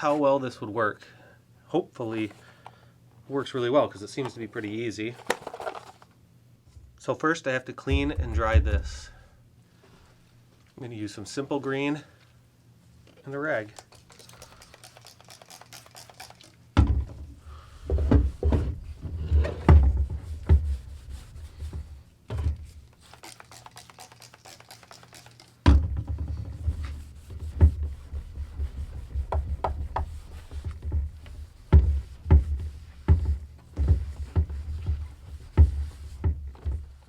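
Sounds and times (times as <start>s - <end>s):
cloth rag rubbing plastic: 4.2s - 6.0s, 13.5s - 16.6s, 20.6s - 22.0s, 22.7s - 25.6s, 26.6s - 37.0s
dull thumps: 7.9s - 9.2s, 25.7s - 37.0s.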